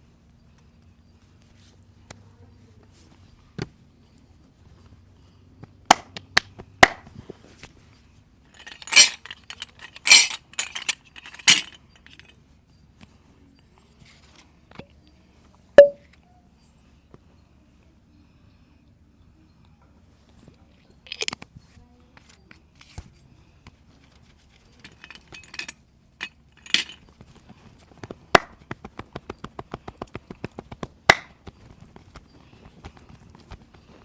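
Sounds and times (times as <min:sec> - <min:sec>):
percussive massage hits: 0:28.4 - 0:32.3.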